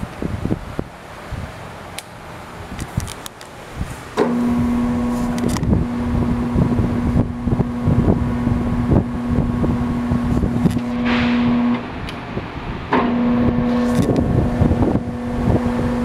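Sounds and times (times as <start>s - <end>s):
low rumble and knocking: 4.2s - 16.0s
lathe motor hum: 12.9s - 16.0s.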